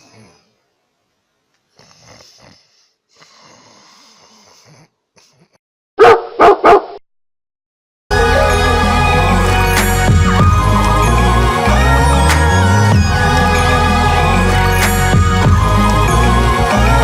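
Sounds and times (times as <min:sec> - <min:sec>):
loud barks: 0:06.0 - 0:07.0.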